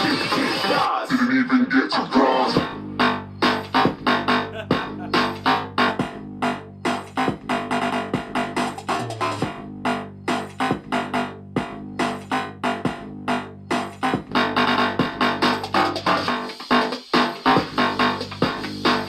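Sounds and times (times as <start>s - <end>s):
pop song through car speaker: 0.0s - 5.5s.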